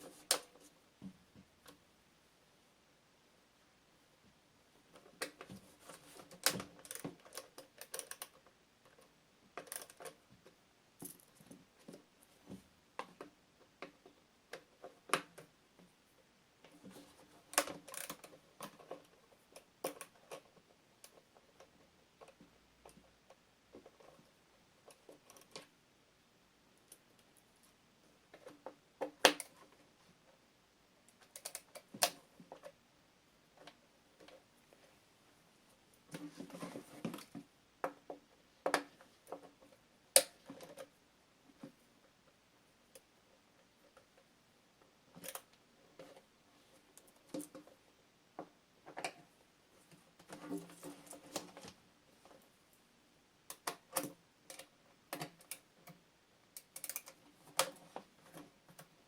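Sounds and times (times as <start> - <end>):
clicks and knocks of plastic parts: 4.9 - 15.5.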